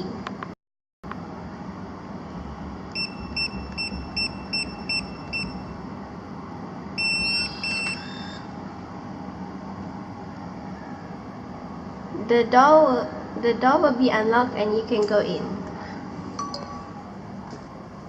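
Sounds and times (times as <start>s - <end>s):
longer beeps: 2.9s - 5.7s, 7.0s - 8.5s
keypad beeps: 3.0s - 5.6s, 7.0s - 8.4s.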